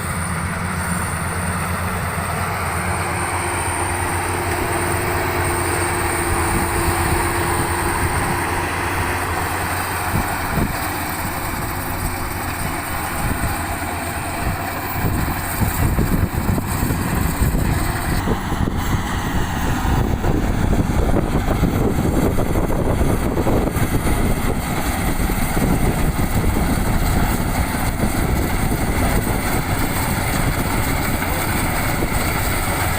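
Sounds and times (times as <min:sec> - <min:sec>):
combine harvester running: 0:00.0 - 0:32.9.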